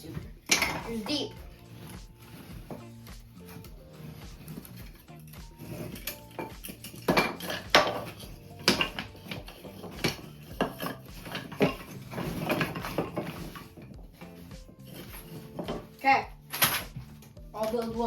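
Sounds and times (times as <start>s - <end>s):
wooden frames knocking together: 5.6s - 14.0s.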